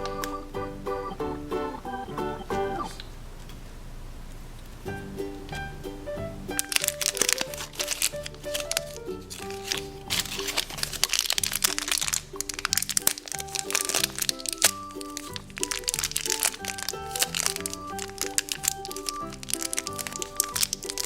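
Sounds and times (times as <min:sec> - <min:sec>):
background music melody: 0:00.0 - 0:03.0, 0:04.8 - 0:21.0
eggs cracking with snaps: 0:06.6 - 0:21.0
wrappers crinkling: 0:06.6 - 0:21.0.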